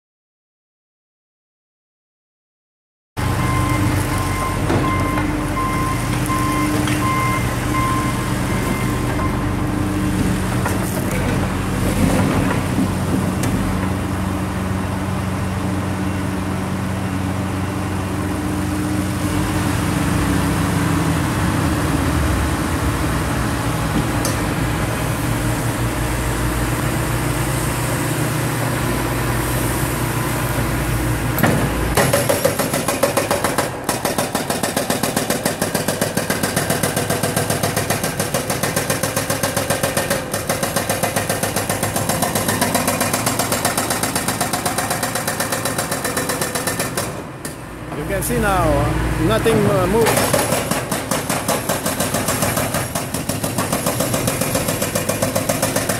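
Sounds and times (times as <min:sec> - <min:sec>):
diesel engine running: 0:03.2 - 0:34.0, 0:35.0 - 0:55.9
hydraulic breaker hammering: 0:31.4 - 0:47.6, 0:50.0 - 0:55.9.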